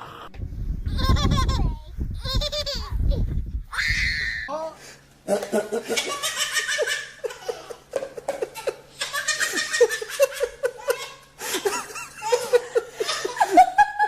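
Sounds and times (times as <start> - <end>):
person laughing high-pitched: 0.9 - 2.8, 5.3 - 14.0.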